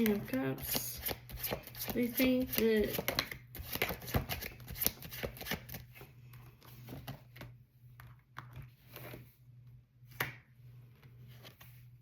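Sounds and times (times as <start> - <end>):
cards tapping and rustling: 0.0 - 5.8
low electrical hum: 0.0 - 12.0.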